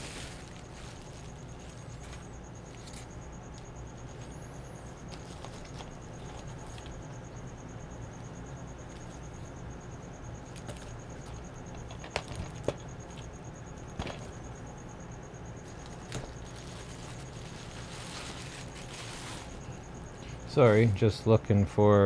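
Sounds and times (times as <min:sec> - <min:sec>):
faint high whine: 0:00.0 - 0:22.0
steady low hum: 0:00.0 - 0:22.0.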